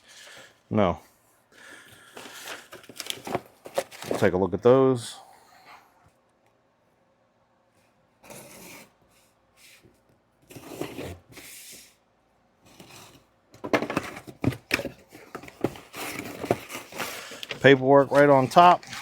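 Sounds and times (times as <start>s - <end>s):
packaging rustling and crinkling: 1.6s - 4.3s, 13.7s - 19.0s
packaging tearing: 2.1s - 4.2s.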